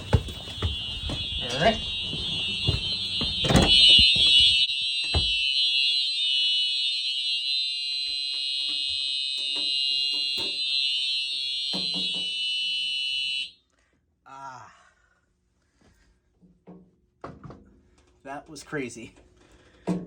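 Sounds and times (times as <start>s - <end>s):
faint knocks and thud: 0.0s - 5.4s
fire alarm horn blaring: 0.0s - 13.6s.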